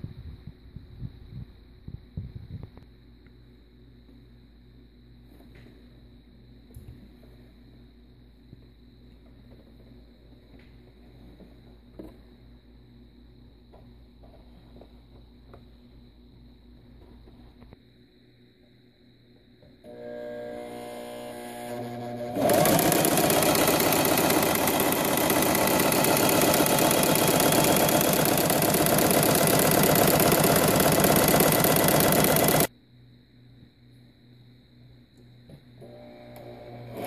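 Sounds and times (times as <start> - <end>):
sewing machine running: 19.9 - 32.7, 35.8 - 37.0.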